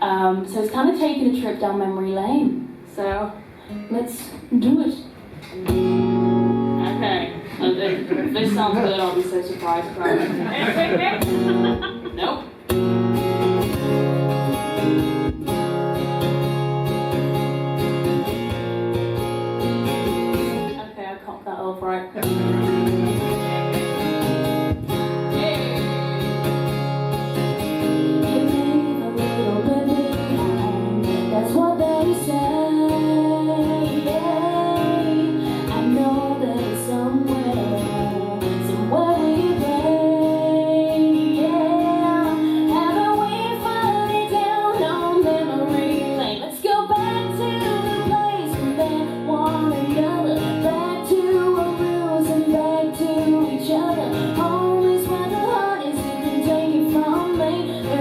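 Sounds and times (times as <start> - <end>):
strummed guitar: 5.2 - 21.0, 22.1 - 58.0
woman singing: 27.8 - 58.0.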